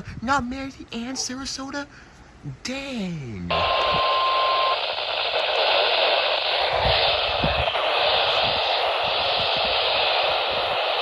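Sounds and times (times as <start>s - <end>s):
radio static hiss: 3.5s - 11.0s.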